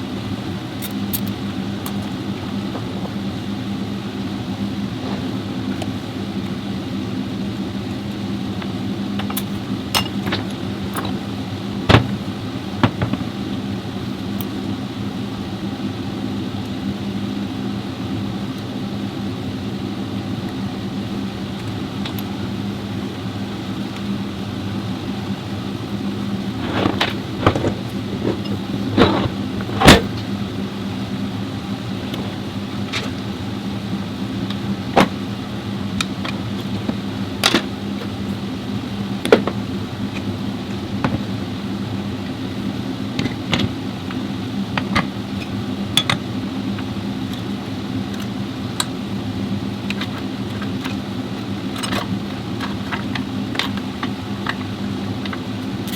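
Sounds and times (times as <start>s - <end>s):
sharp clicks and knocks: 12.8s - 13.4s
car engine running: 25.8s - 37.2s.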